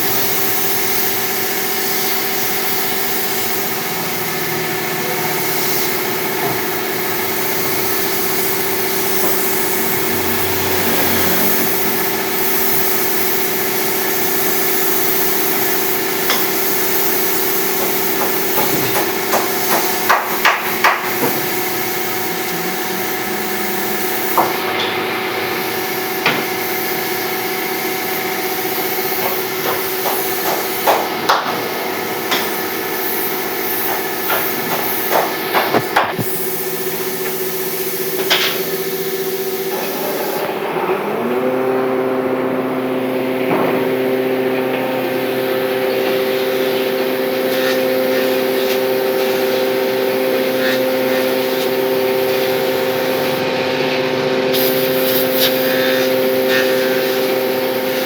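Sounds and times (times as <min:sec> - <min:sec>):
motor humming: 0:03.8 - 0:14.1
sharp knocks on wood: 0:34.3 - 0:36.3.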